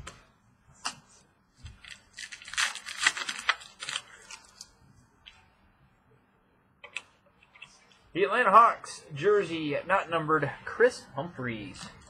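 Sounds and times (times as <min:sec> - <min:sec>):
packaging rustling and tearing: 0:01.7 - 0:04.7.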